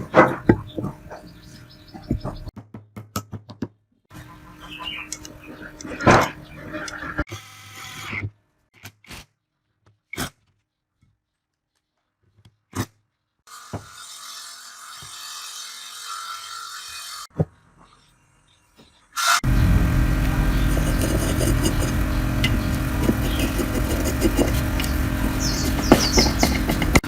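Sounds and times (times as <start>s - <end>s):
hissing whirring power tool: 19.2s - 27.0s.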